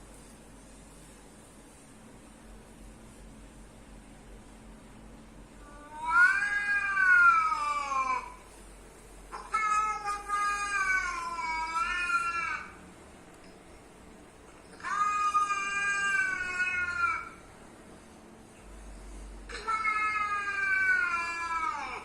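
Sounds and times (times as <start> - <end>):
cat meowing: 5.7 - 8.2.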